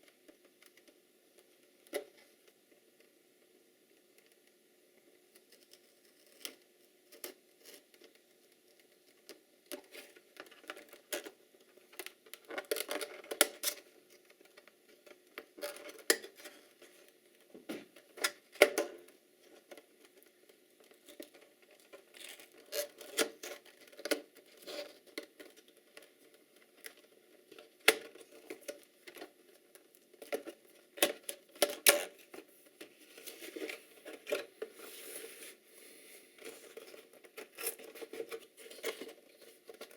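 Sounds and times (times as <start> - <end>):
packaging being unpacked: 30.3 - 39.9.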